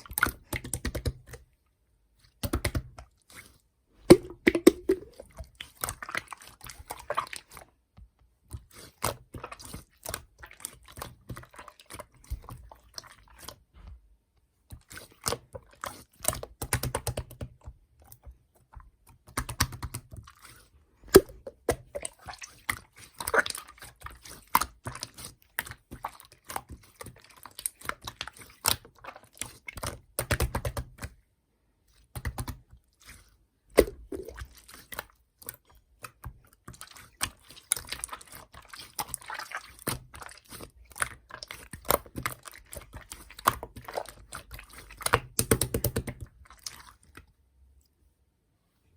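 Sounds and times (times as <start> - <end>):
slime clicking and popping: 4.1 - 5.1, 45.0 - 46.2.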